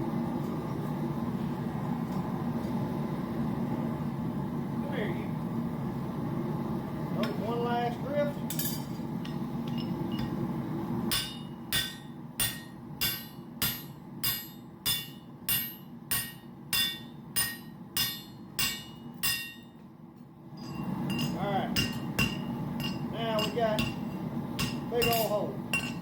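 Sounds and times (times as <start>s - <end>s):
hammer striking metal: 11.1s - 19.8s, 20.6s - 26.0s.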